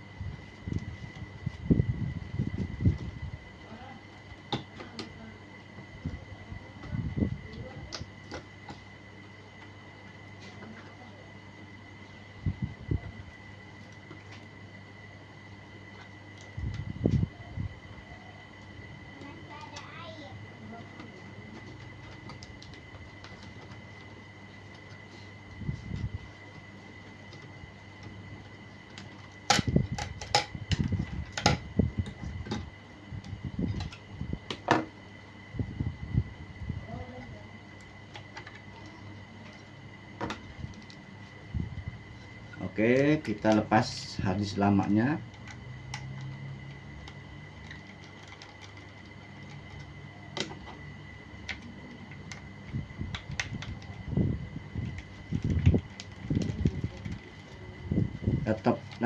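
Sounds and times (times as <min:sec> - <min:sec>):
faint fan hum: 0:00.0 - 0:59.0
faint high whine: 0:00.0 - 0:59.0
laptop parts clicking: 0:45.3 - 0:50.8.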